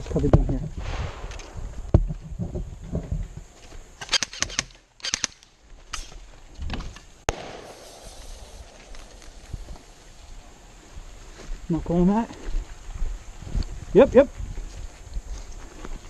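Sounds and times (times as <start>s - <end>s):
airsoft guns firing: 7.3s - 9.4s.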